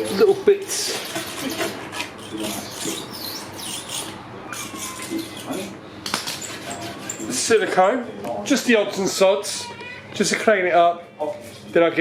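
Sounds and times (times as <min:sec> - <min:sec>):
scraping strokes on glass: 0:00.0 - 0:07.8.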